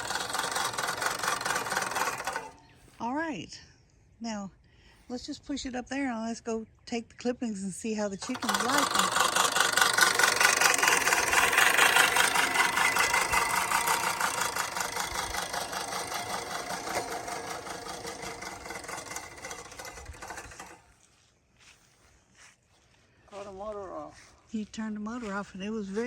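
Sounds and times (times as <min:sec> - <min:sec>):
lawn mower running: 0:00.0 - 0:03.0, 0:08.2 - 0:21.2.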